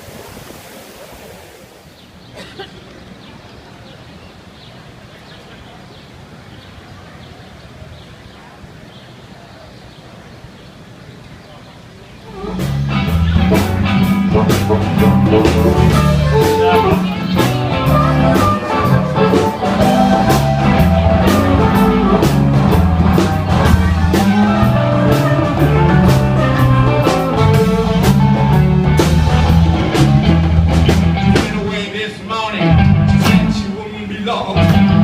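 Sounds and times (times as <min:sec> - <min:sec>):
person singing: 0:12.3 - 0:29.1
rock music with drums: 0:12.3 - 0:32.0, 0:32.6 - 0:33.8, 0:34.6 - 0:35.0.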